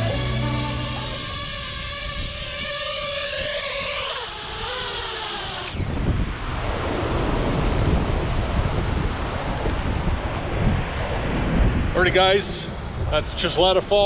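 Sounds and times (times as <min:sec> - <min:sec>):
background music: 0:00.0 - 0:01.3
waterfall rushing: 0:00.0 - 0:01.8
wind buffeting microphone: 0:00.0 - 0:13.3.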